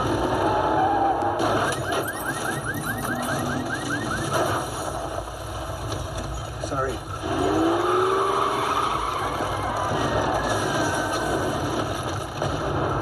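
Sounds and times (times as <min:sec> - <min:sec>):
car alarm chirping: 0:01.5 - 0:04.7.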